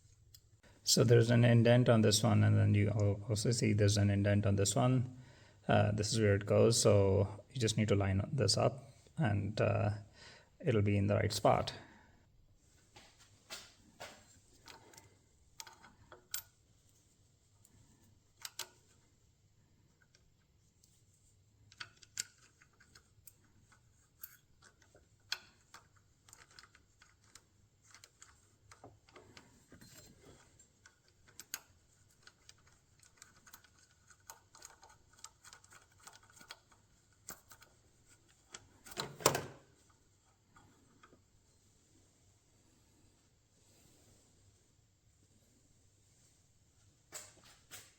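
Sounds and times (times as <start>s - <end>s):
metallic clicks and taps of tools: 14.6s - 16.5s, 18.4s - 18.8s, 21.7s - 37.7s.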